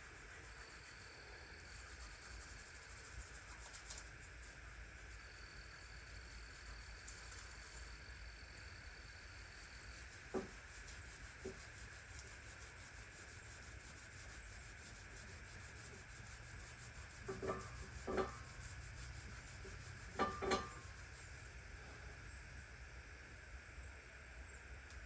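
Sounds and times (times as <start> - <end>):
hand tool scraping metal parts: 20.2 - 20.9.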